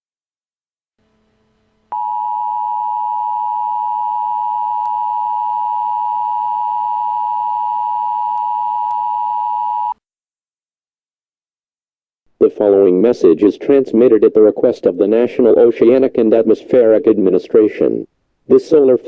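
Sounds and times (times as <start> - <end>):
faint hum: 1.1 - 9.9.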